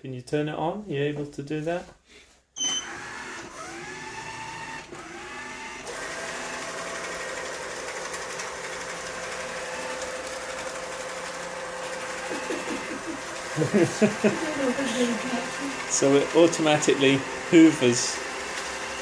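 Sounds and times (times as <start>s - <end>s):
short beep: 2.6s - 2.9s
robot vacuum motors whirring: 2.8s - 19.0s.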